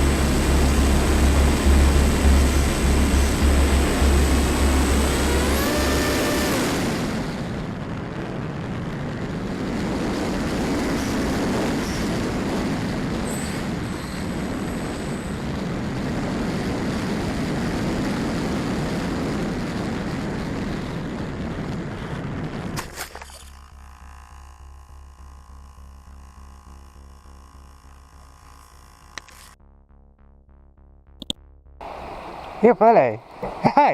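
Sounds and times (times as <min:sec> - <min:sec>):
wind rushing over microphone: 0:00.0 - 0:23.0, 0:31.8 - 0:33.9
sharp clicks: 0:31.2 - 0:31.4.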